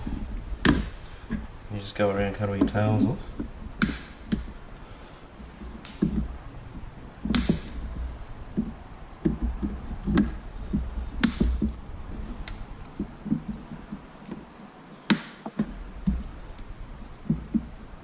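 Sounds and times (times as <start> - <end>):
soft knocks of handling: 2.4 - 4.7, 5.4 - 14.5.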